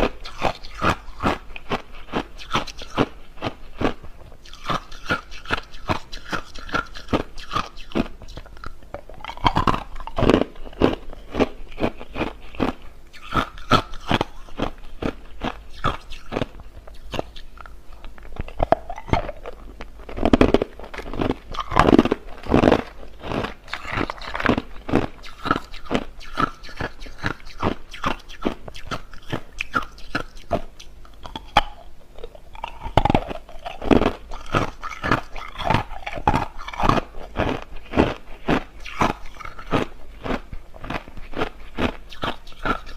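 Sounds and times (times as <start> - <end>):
person crunching ice: 9.2 - 16.0, 19.0 - 26.0, 32.6 - 42.9.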